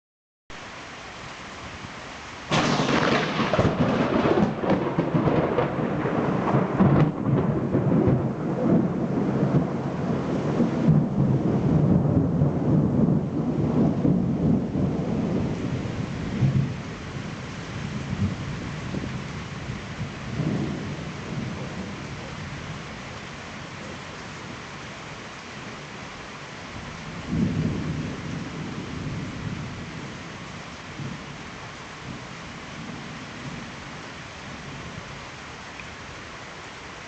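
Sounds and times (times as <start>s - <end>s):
thunder crackling and rumbling: 2.5s - 23.0s, 26.8s - 30.4s.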